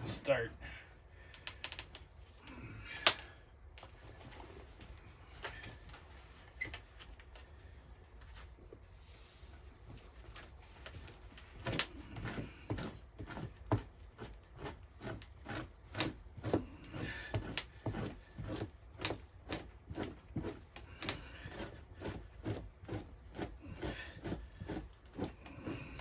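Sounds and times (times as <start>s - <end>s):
knife scraping fat off pelt: 11.7s - 26.0s.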